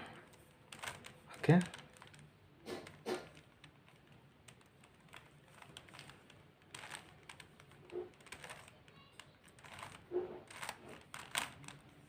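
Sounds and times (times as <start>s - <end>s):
puzzle cube clicking: 0.2s - 12.0s.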